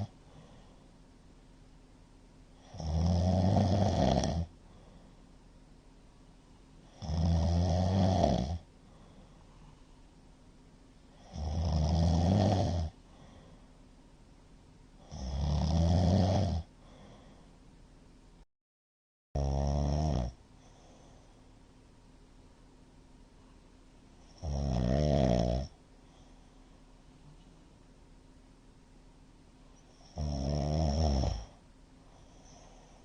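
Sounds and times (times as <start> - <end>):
man snoring loudly: 2.6 - 4.5, 6.9 - 8.6, 11.2 - 13.0, 15.0 - 16.7, 19.4 - 20.4, 24.4 - 25.7, 30.0 - 31.6.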